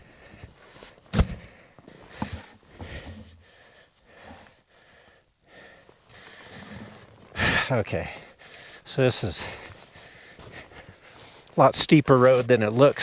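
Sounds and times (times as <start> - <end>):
faint knocks and rustles: 0.7 - 4.5.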